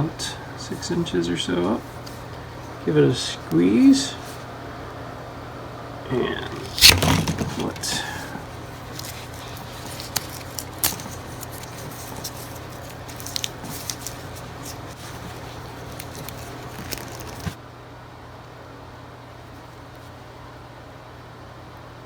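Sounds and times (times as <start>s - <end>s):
low steady hum: 0.0s - 22.0s
plastic cable jacket crackling: 6.6s - 17.6s
sharp clicks of cable stripper: 6.7s - 7.2s.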